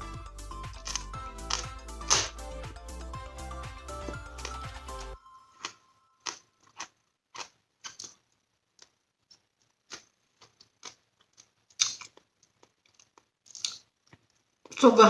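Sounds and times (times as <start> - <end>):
crunchy chewing: 4.3 - 14.8.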